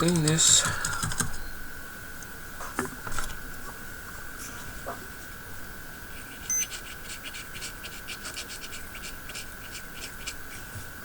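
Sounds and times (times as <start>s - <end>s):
short high beep: 6.5s - 6.7s.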